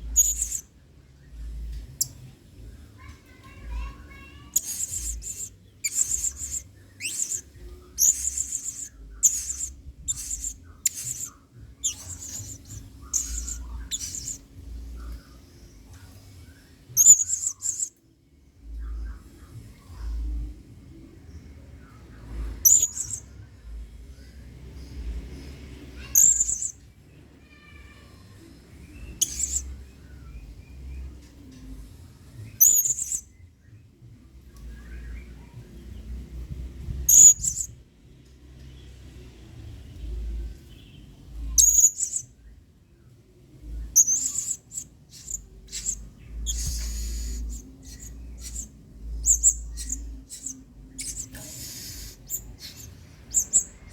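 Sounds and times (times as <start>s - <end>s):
soft twittering chirps: 0.0s - 53.9s
parrot chirping shrilly: 0.1s - 0.6s, 3.8s - 14.4s, 17.0s - 17.9s, 22.6s - 23.2s, 26.0s - 26.7s, 29.2s - 29.7s, 37.1s - 37.7s, 41.6s - 42.2s, 44.0s - 53.9s.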